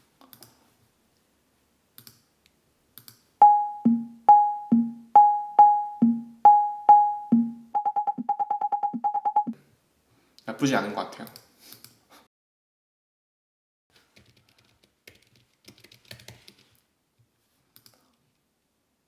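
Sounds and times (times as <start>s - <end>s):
synthesised higher and lower beeps: 3.4s - 9.5s.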